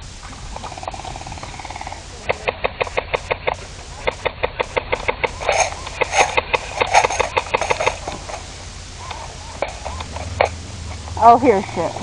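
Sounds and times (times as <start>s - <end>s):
airsoft guns firing: 1.3s - 8.3s.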